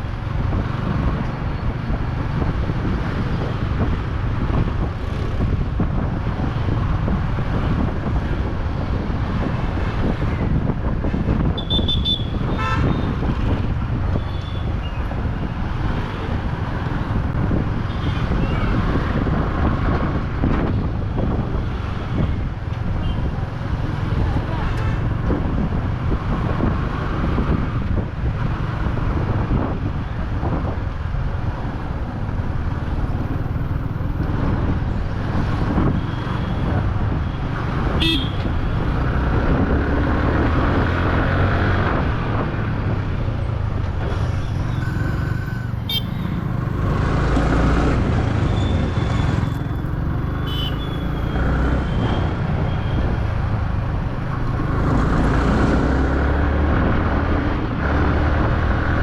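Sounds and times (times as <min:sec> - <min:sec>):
wind and road rumble: 0:00.0 - 0:59.0
vehicle horns honking: 0:11.6 - 0:13.2, 0:38.0 - 0:38.5, 0:44.7 - 0:46.4, 0:50.4 - 0:51.4.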